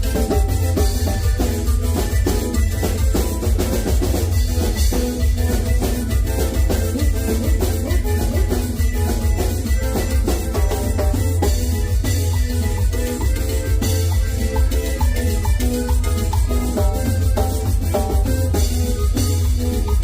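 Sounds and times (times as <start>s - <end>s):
upbeat latin dance music: 0.0s - 20.0s.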